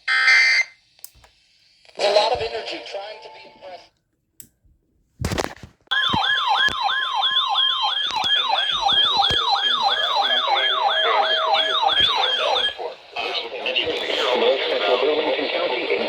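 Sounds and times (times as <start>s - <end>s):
yelp siren: 5.9s - 12.8s
steady siren tone: 5.9s - 12.9s.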